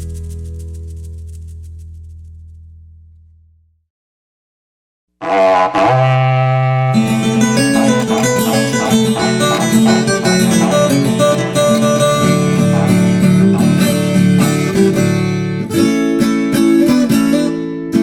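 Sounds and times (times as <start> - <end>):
steady bass line: 0.0 - 3.6, 5.3 - 15.7
plucked acoustic guitar melody: 5.4 - 18.0.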